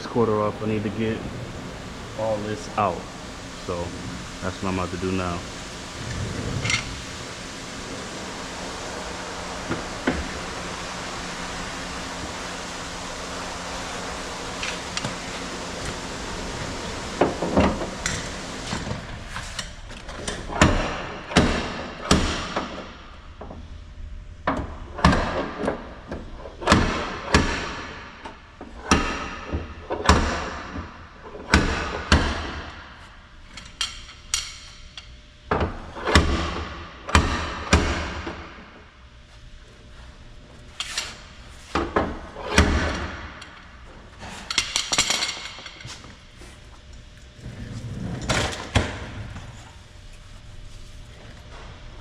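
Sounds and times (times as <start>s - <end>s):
steady hiss: 0.0s - 19.8s.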